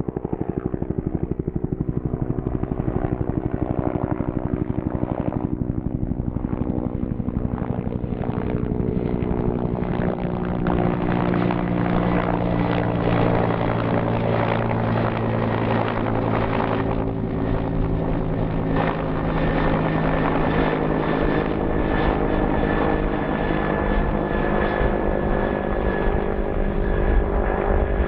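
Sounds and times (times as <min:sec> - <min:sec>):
helicopter rotor and engine hum: 0:00.0 - 0:28.0
high turbine whine: 0:12.2 - 0:28.0.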